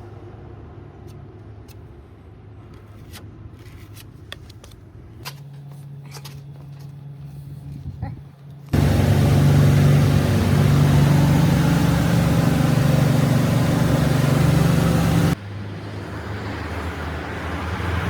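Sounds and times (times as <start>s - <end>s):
quiet engine hum: 8.8s - 15.4s
vehicle engine running: 8.8s - 15.4s.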